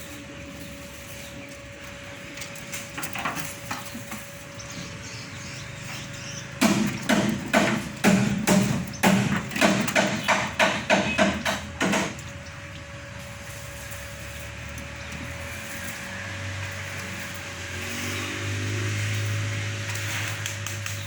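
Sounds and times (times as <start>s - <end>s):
sharp knocks: 6.6s - 12.3s.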